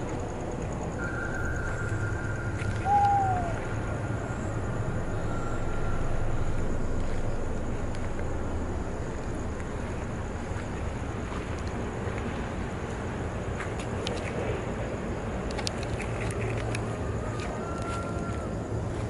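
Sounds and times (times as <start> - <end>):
high-pitched whine: 0.0 - 11.2
low rumble: 0.0 - 13.4
short falling hoot-like call: 2.8 - 3.6.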